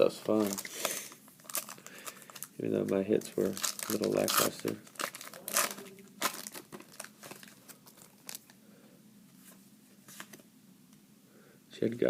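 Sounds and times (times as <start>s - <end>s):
card pack wrapper crinkling: 0.0s - 8.6s.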